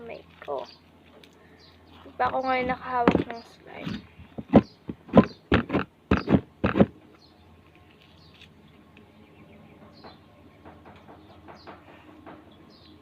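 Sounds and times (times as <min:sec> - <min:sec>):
faint handling noise: 0:07.6 - 0:09.1.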